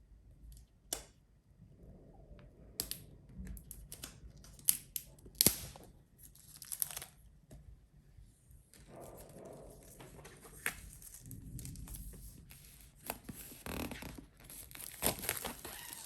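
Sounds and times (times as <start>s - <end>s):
packaging being opened: 5.4s - 7.2s, 10.2s - 16.0s
packaging tearing and crinkling: 5.4s - 7.2s, 12.6s - 16.0s.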